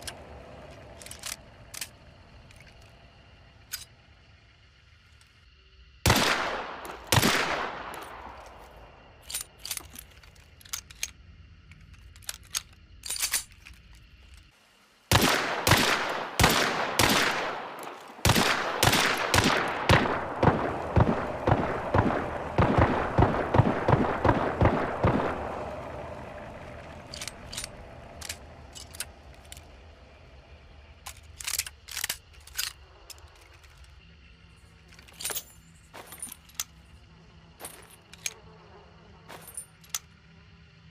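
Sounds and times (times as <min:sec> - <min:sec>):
pistol gunshots echoing: 0:06.1 - 0:08.4, 0:15.1 - 0:25.6.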